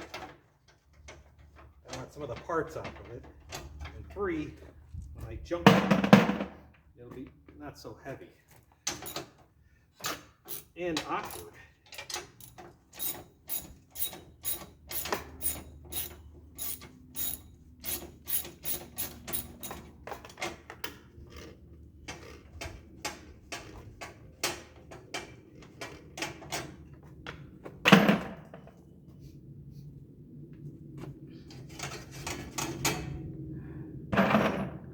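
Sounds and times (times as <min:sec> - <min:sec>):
ratchet wrench clicking: 0:10.5 - 0:19.9.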